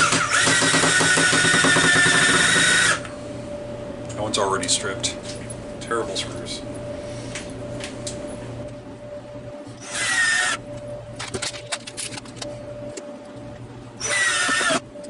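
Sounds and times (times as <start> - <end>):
drill driving screw into wood: 0.0 - 3.0, 9.8 - 10.6, 14.0 - 14.8.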